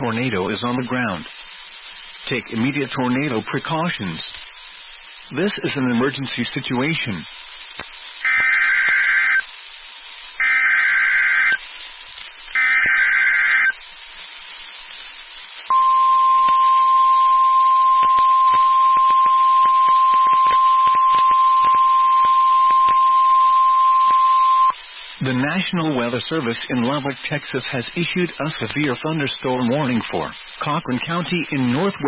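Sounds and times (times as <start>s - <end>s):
steady warning alarm tone: 8.2s - 9.5s, 10.4s - 11.6s, 12.5s - 13.8s, 15.7s - 24.8s
screeching digital data bursts: 8.2s - 13.9s, 15.7s - 32.0s
clicks: 17.9s - 23.2s.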